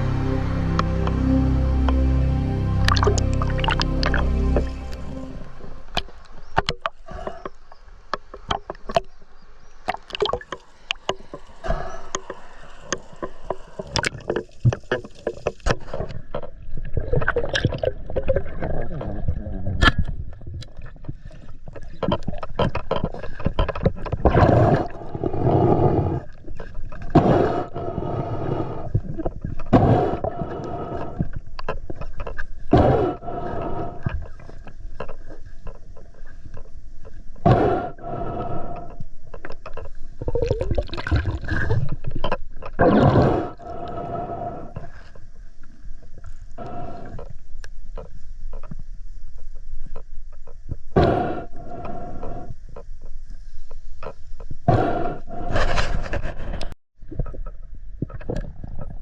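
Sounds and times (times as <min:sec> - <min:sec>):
water sloshing and gurgling: 0:00.0 - 0:37.4, 0:38.0 - 0:54.7, 0:55.3 - 0:59.0.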